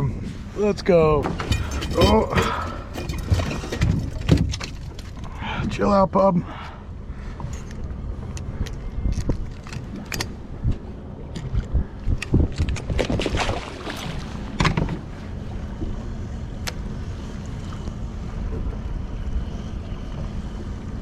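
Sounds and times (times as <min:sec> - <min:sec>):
wind: 0:00.0 - 0:21.0
knocks and rattles on boat: 0:01.0 - 0:06.0, 0:07.3 - 0:16.9, 0:17.7 - 0:20.8
water noise: 0:06.4 - 0:21.0.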